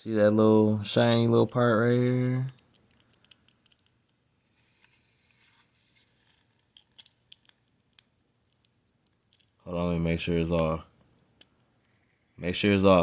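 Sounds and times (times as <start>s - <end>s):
small parts scraping and clicking: 2.5s - 9.6s.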